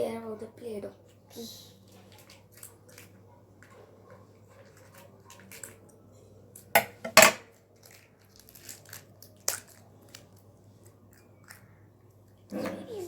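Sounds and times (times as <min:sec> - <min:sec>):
plastic wrapping crackling: 0:07.5 - 0:11.6.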